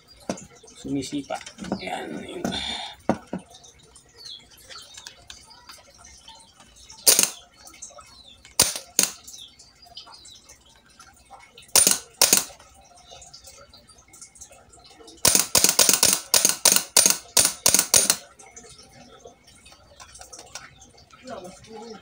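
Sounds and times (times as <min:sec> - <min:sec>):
metal knocking and tapping: 0:08.6 - 0:09.2, 0:15.3 - 0:18.2.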